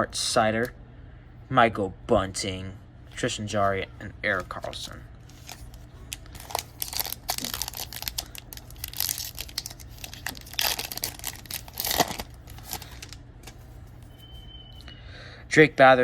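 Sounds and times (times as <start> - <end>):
plastic wrapper crinkling and tearing: 5.2 - 13.8.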